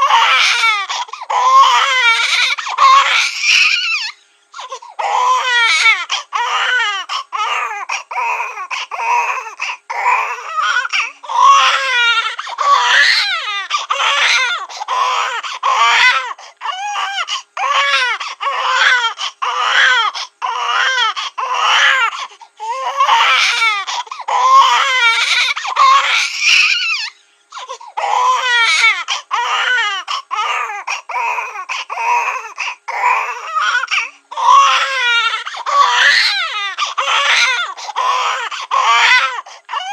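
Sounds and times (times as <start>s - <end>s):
cartoon baby crying: 0.0s - 4.2s, 5.0s - 22.1s, 22.7s - 27.2s, 28.0s - 39.9s.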